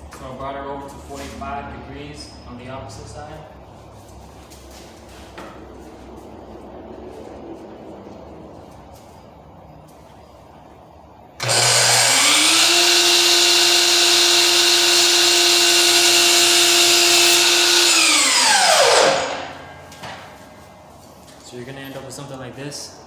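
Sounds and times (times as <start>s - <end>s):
electric miter saw whining: 11.4s - 19.8s.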